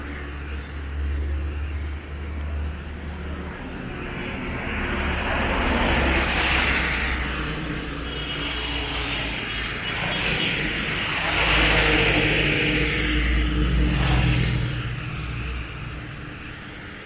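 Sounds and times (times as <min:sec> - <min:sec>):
vehicle passing close by: 0:11.1 - 0:16.4.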